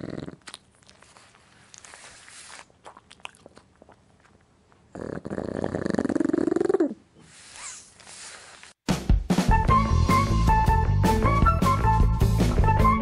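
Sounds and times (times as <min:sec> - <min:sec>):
dog snoring: 0:00.0 - 0:00.4, 0:04.9 - 0:07.8
rock music with guitar: 0:09.4 - 0:13.0.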